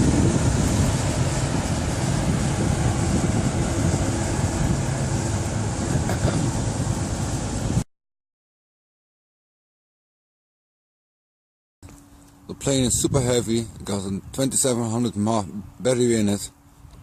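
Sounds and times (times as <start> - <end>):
wind buffeting microphone: 0.0 - 7.8, 12.5 - 17.0.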